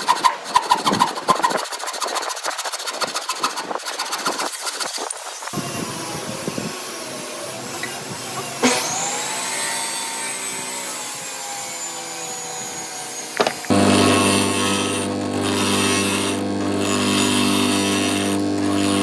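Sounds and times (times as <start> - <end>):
high-pitched motor: 5.4 - 19.0
machine with deep hum: 13.4 - 19.0.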